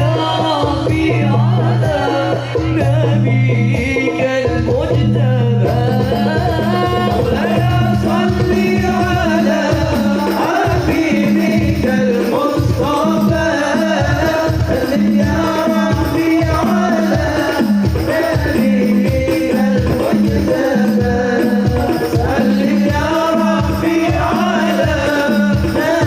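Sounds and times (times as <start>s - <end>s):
frame drum beats: 0.0s - 26.0s
solo voice singing: 0.0s - 26.0s.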